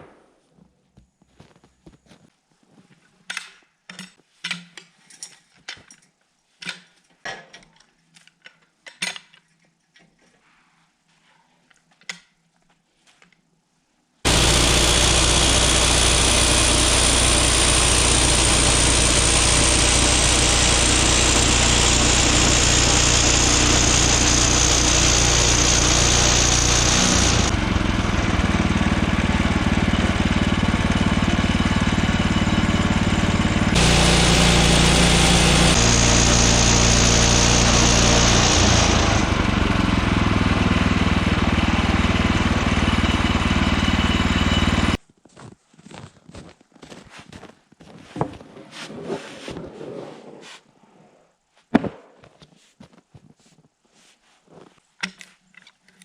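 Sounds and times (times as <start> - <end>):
band saw blade cutting log: 14.3 - 29.8, 33.3 - 44.8
gasoline engine at high speed: 14.3 - 45.0.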